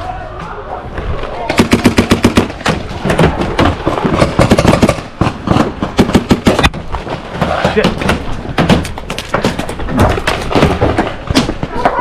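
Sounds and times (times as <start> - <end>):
paintball markers firing: 1.5 - 6.8.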